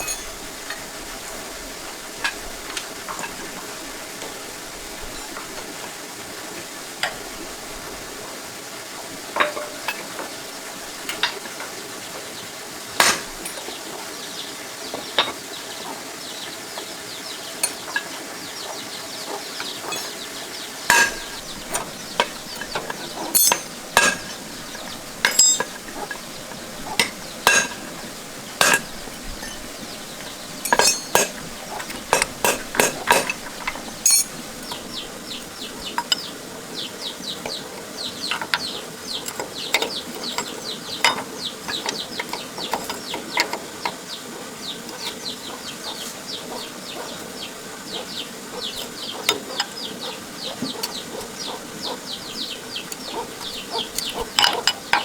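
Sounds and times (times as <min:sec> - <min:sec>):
metal tools clinking: 0:00.0 - 0:00.9, 0:13.0 - 0:13.8, 0:17.6 - 0:18.2, 0:19.6 - 0:44.0, 0:48.6 - 0:55.0
steady hiss: 0:00.0 - 0:55.0.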